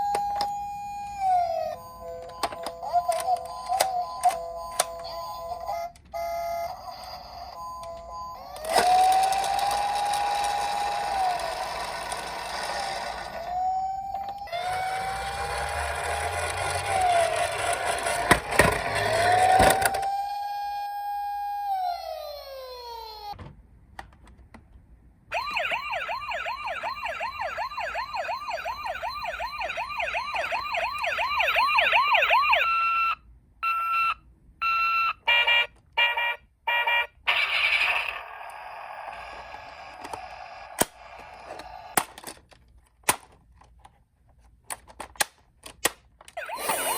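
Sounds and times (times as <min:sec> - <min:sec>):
toy siren wailing: 0:00.0 - 0:23.4, 0:25.3 - 0:42.0, 0:46.4 - 0:46.9
toy car rattling: 0:08.5 - 0:13.6, 0:14.5 - 0:20.2, 0:37.4 - 0:42.6, 0:45.8 - 0:46.9.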